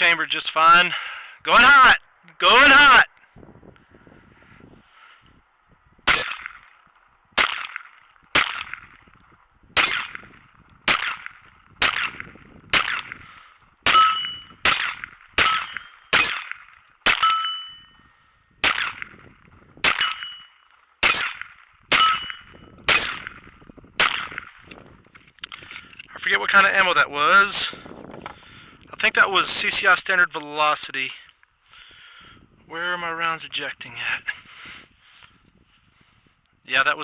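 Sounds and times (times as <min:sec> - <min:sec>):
pistol shots: 0:06.1 - 0:06.6, 0:07.4 - 0:08.8, 0:09.8 - 0:10.3, 0:10.9 - 0:13.2, 0:13.8 - 0:17.3, 0:18.6 - 0:19.1, 0:19.8 - 0:20.4, 0:21.0 - 0:23.4, 0:24.0 - 0:24.5
brief metallic ring: 0:17.2 - 0:18.1, 0:20.0 - 0:23.4.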